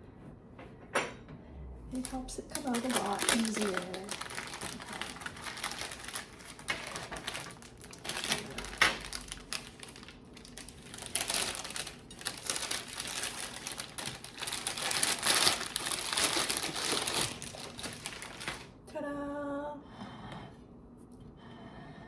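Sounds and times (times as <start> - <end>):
rustling and crinkling: 1.9 - 18.8.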